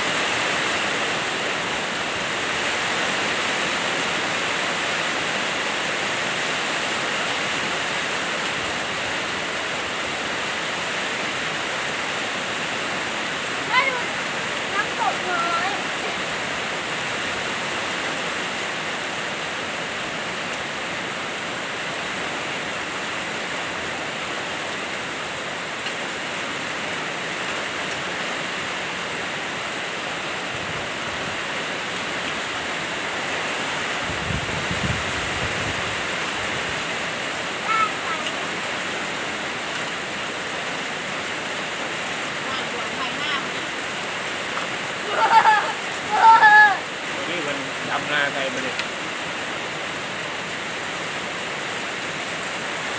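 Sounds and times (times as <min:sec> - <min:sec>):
heavy rain: 0:00.0 - 0:52.9.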